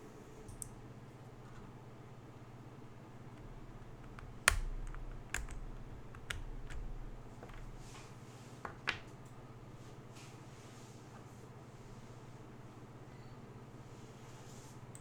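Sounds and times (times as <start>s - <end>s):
steady low hum: 0.0s - 9.9s
mechanical keyboard keystrokes: 3.3s - 8.0s.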